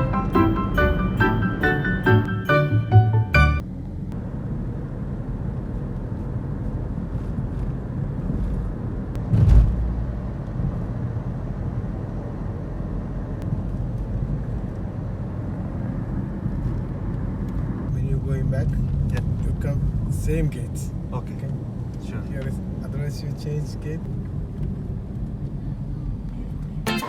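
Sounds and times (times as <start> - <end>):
car driving rumble: 3.6 - 23.2
car bump: 9.2 - 10.4.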